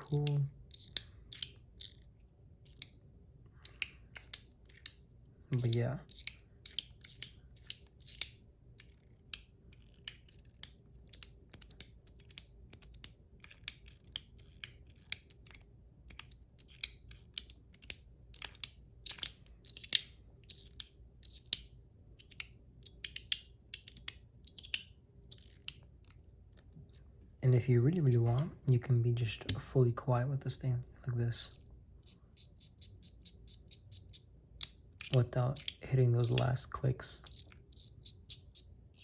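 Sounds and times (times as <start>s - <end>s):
metal fidget toy clicking: 5.6s - 26.3s, 31.5s - 36.6s, 37.2s - 39.0s.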